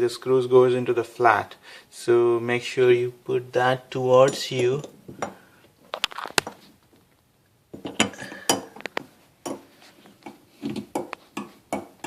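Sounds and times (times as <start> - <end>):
metal faucet parts clinking: 4.2 - 5.3.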